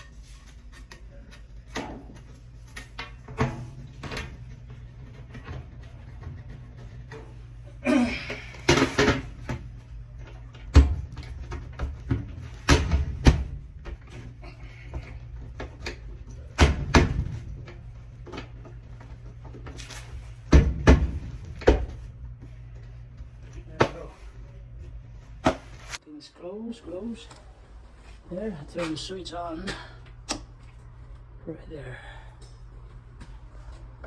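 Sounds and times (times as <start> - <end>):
low hum: 0.0 - 26.0.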